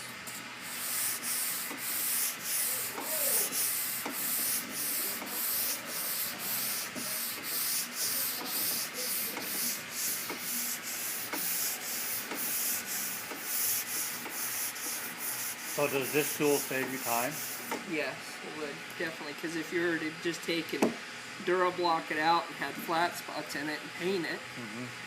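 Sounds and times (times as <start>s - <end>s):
sandpaper sanding car panel: 0.6s - 17.7s.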